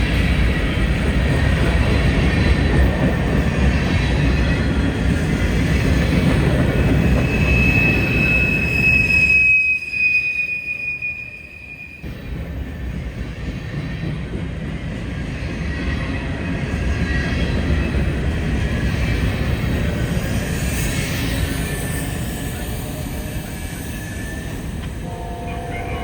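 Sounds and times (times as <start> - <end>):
low rumble of train cars: 0.0 - 26.0
train wheel squeal: 0.0 - 26.0.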